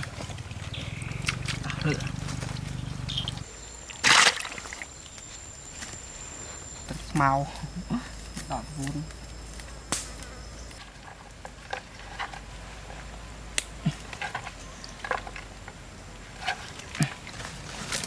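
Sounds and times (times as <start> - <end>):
insects buzzing: 0.4 - 10.8.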